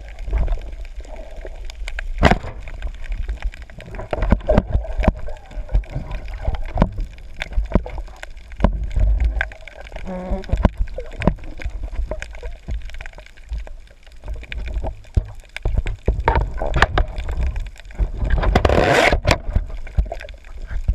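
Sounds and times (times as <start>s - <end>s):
water sloshing and gurgling: 0.0s - 20.9s
sharp clicks and knocks: 14.5s - 20.3s.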